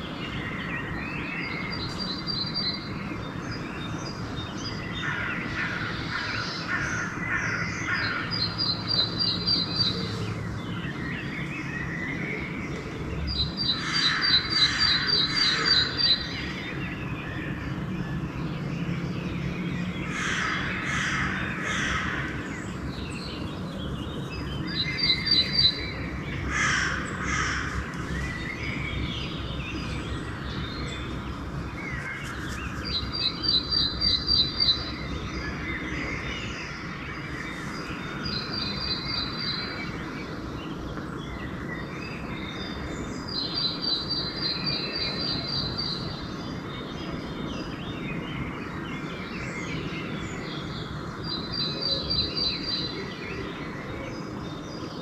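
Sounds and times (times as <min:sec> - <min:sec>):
crows cawing: 0:20.1 - 0:22.3, 0:26.5 - 0:27.8.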